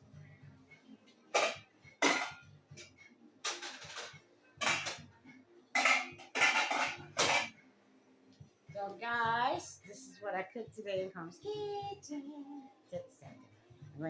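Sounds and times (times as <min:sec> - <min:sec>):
pot lids and dishes clattering: 0:01.3 - 0:05.1, 0:05.7 - 0:07.6.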